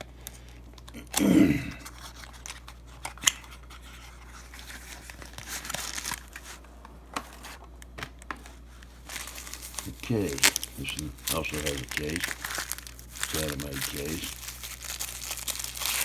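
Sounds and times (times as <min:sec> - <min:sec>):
cardboard packaging rustling: 0:01.8 - 0:16.0.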